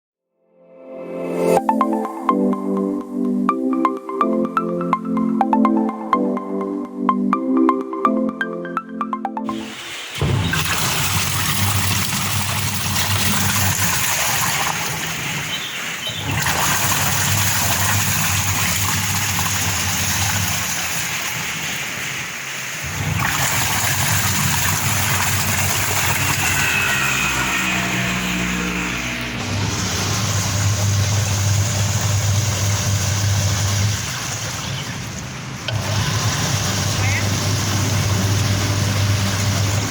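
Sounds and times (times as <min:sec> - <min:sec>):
washing machine motor humming: 0:09.5 - 0:22.1, 0:22.8 - 0:39.9
washing machine water churning: 0:09.5 - 0:39.9.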